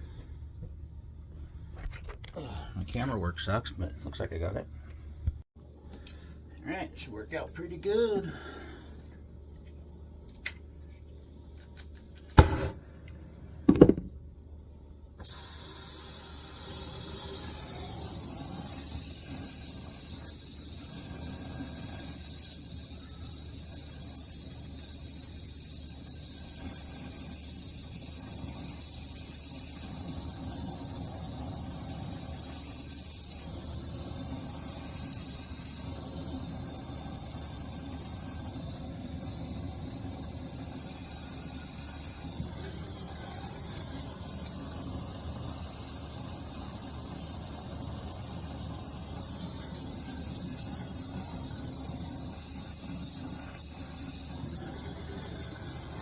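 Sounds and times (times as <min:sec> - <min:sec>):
gas hissing: 0:15.2 - 0:56.0.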